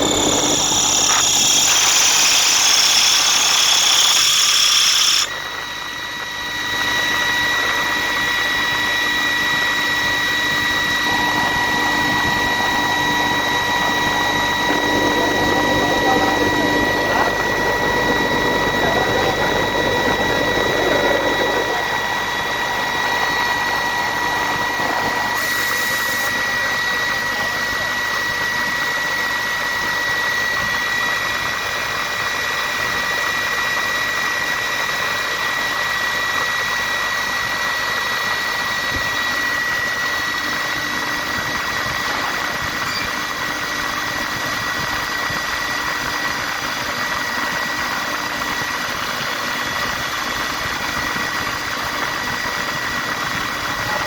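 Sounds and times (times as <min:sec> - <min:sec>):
air compressor whining: 0:00.0 - 0:54.0.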